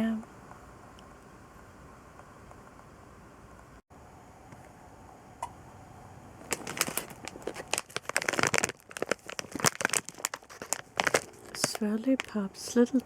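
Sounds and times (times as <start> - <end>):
plastic packaging crinkling: 6.4 - 13.0.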